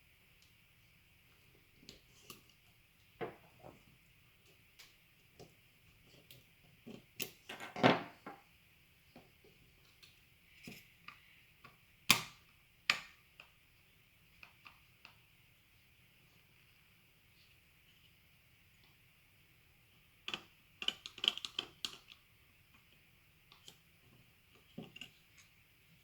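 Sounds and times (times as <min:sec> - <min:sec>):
handling noise on a workbench: 0:06.9 - 0:08.4
small parts clicking and knocking: 0:20.2 - 0:22.9, 0:24.5 - 0:25.6.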